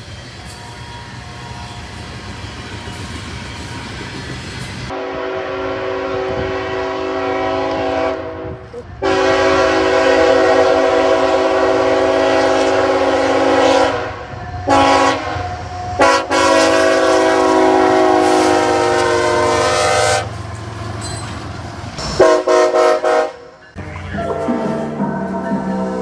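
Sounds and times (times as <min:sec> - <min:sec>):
train rumbling: 0:00.0 - 0:26.0
locomotive air horn blasts: 0:04.9 - 0:20.3, 0:22.0 - 0:26.0.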